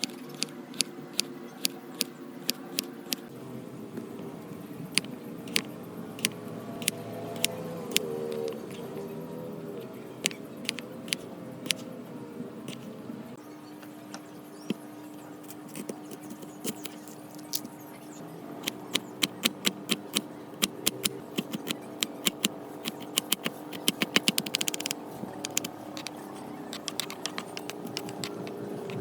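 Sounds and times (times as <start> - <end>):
sharp taps and clicks: 18.6 - 29.0.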